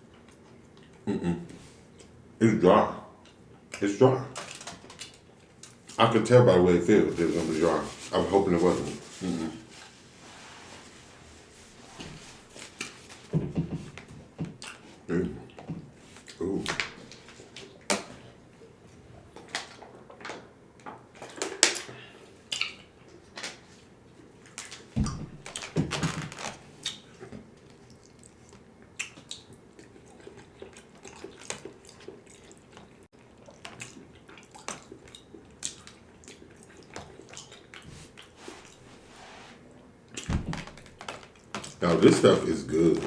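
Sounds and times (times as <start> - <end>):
wet chewing and lip smacks: 22.5 - 23.3, 26.8 - 38.9.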